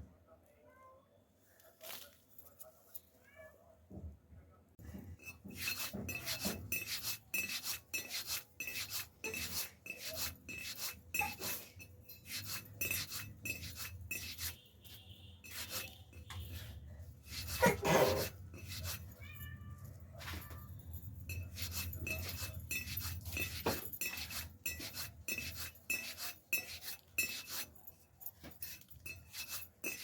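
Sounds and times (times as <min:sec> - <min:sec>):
hands rubbing dough: 0:05.2 - 0:19.2, 0:21.0 - 0:30.0.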